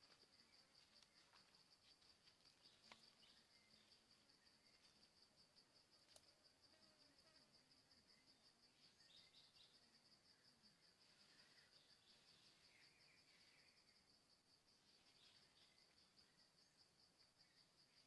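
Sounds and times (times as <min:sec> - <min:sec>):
insect chirping: 0:00.0 - 0:18.0
bird chirps: 0:08.8 - 0:09.8.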